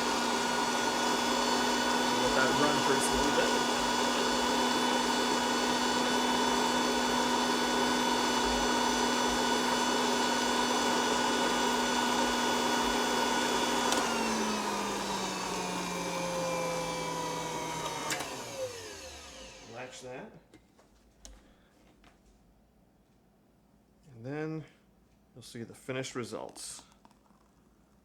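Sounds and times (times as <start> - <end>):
milkshake mixer motor humming: 0.0 - 19.9.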